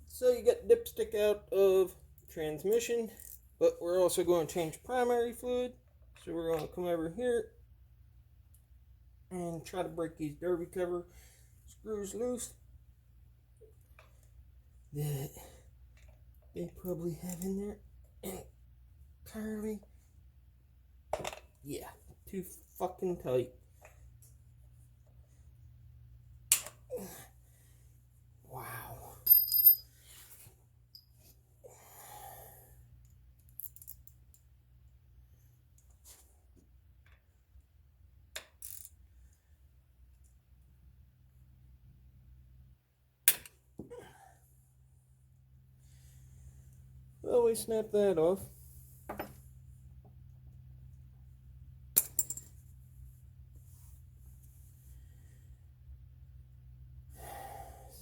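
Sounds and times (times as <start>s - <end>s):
metal tool parts clinking: 29.3s - 29.9s, 52.0s - 52.6s
heavy exhale: 57.1s - 58.0s.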